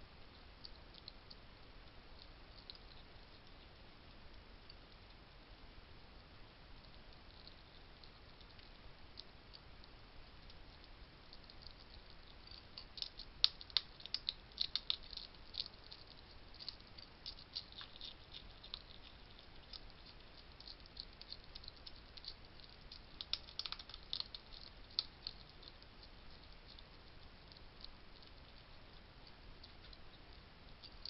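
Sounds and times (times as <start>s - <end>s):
hedgehogs crunching dry food: 6.8s - 31.0s.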